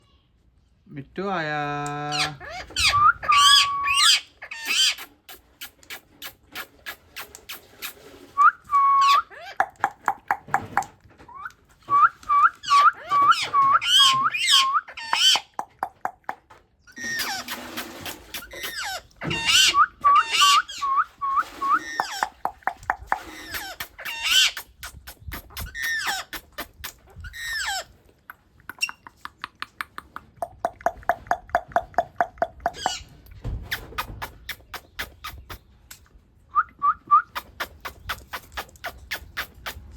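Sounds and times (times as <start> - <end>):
parrot calling and chirping: 2.1 - 8.0, 8.6 - 29.8, 30.4 - 33.1, 33.7 - 35.6
parrot whistling: 8.4 - 15.6, 18.7 - 24.6
sharp clicks: 9.6 - 11.0, 15.2 - 16.6, 28.3 - 33.0.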